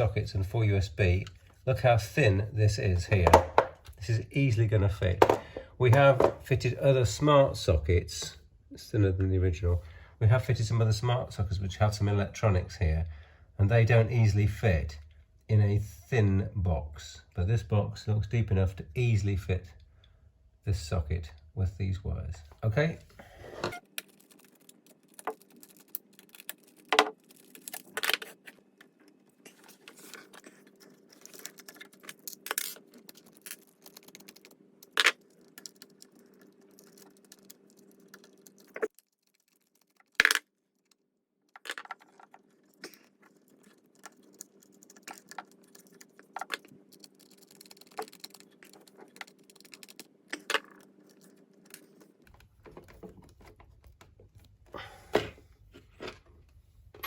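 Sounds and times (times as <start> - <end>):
faint steady hum: 0.0 - 38.9.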